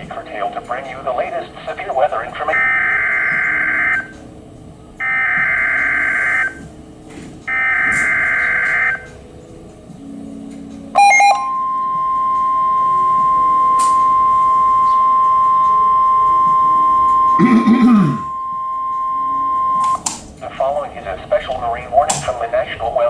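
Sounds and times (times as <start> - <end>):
steady warning alarm tone: 2.2 - 20.2
buzzy warbling data bursts: 7.5 - 9.1, 11.0 - 20.0.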